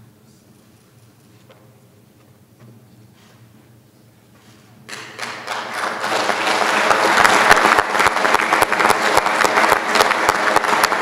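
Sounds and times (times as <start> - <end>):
people applauding: 4.9 - 11.0.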